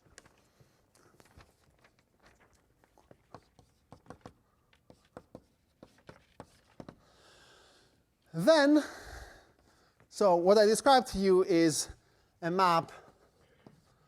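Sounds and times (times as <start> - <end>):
chalk tapping on blackboard: 3.2 - 7.0.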